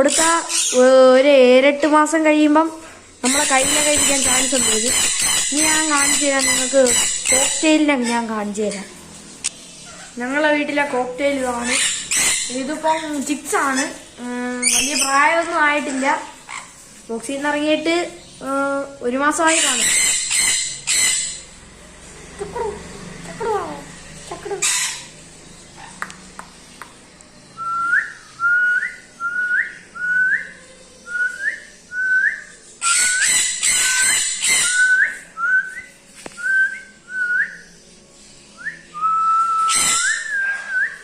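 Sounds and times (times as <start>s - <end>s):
parrot screeches: 3.3s - 8.2s, 11.6s - 13.1s, 19.5s - 21.4s, 24.6s - 25.2s, 32.8s - 35.0s, 39.6s - 41.0s.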